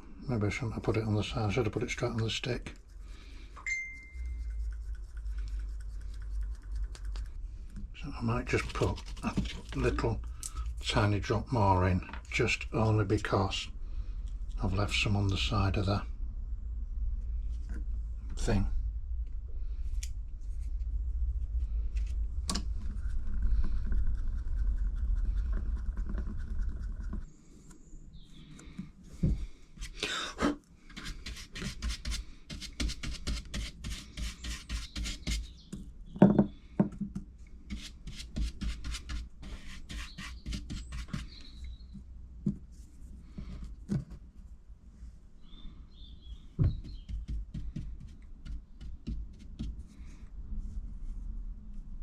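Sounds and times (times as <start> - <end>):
stick scraping in a cup: 3.7 - 7.3, 8.4 - 10.0, 30.9 - 35.5, 37.7 - 41.5
low rumble: 12.6 - 27.2.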